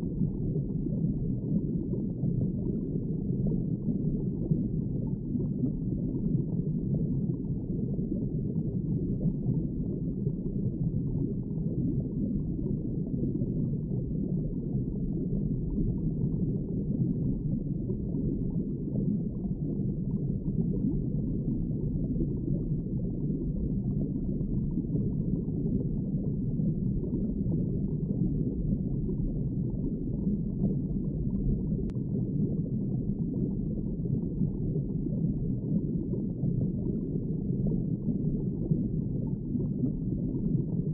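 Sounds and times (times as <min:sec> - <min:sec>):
muffled underwater rush: 0:00.0 - 0:40.9.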